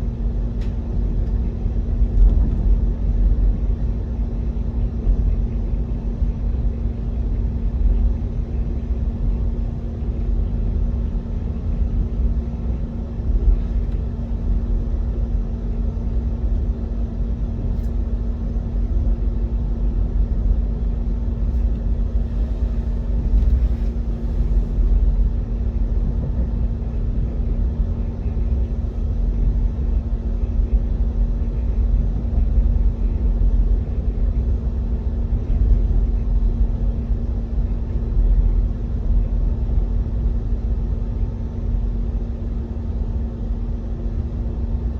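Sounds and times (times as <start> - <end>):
vehicle engine rumbling: 0.0 - 3.8, 7.4 - 18.0, 20.7 - 37.2.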